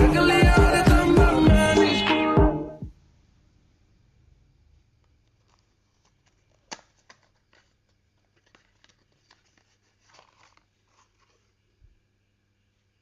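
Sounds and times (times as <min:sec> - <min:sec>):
handling rustles: 0:05.1 - 0:11.8.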